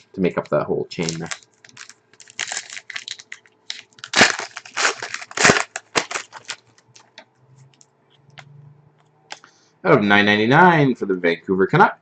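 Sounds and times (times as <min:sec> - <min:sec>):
cards and packaging rustling: 0:01.0 - 0:07.2.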